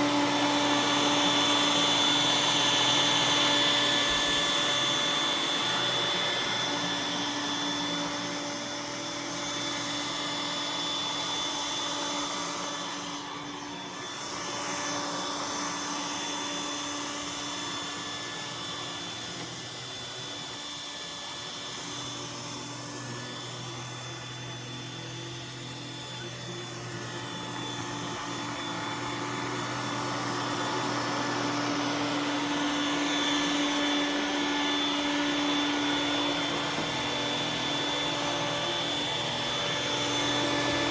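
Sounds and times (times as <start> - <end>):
robot vacuum running: 0.0 - 40.9.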